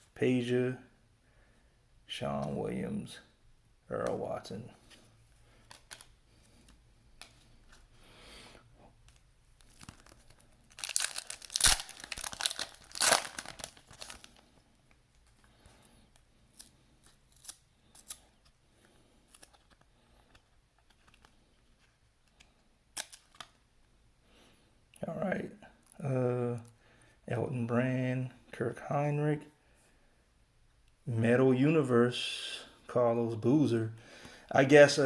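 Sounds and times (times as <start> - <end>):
wrapper tearing and crinkling: 9.6 - 14.4, 16.6 - 18.2.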